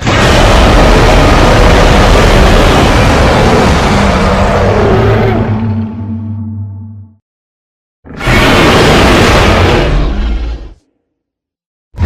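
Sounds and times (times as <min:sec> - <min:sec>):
monster roar rumbling: 0:00.0 - 0:07.1, 0:08.1 - 0:10.8
faint held tone: 0:05.6 - 0:07.2.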